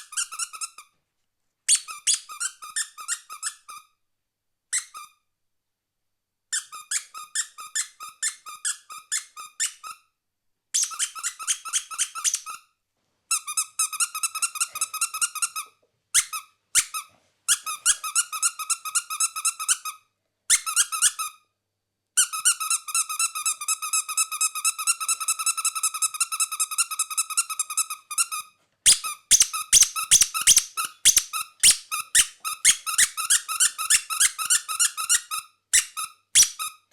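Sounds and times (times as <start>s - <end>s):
squeaky toy squeaking: 0.0s - 0.9s, 1.7s - 4.0s, 4.7s - 5.2s, 6.5s - 10.1s, 10.7s - 12.7s, 13.3s - 21.5s, 22.2s - 36.9s.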